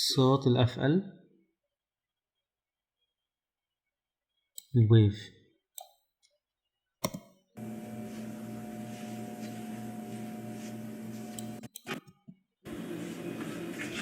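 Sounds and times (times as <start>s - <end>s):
mechanical hum with low throb: 7.6s - 12.0s, 12.7s - 14.0s.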